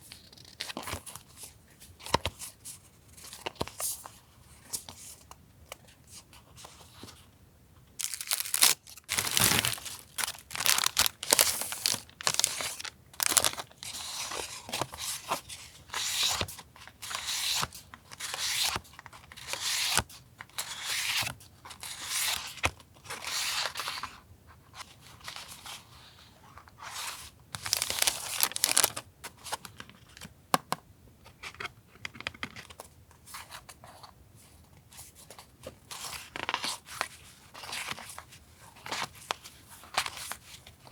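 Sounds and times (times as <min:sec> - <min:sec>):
paper rustling and tearing: 0:08.0 - 0:13.6, 0:27.6 - 0:29.0.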